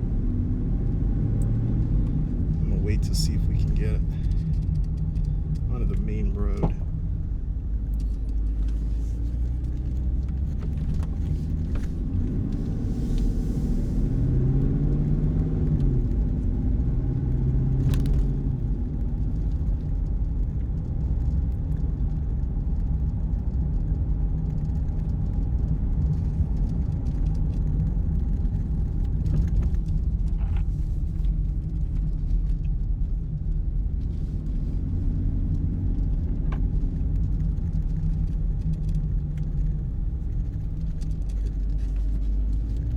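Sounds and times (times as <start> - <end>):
car engine droning: 0.0 - 42.9.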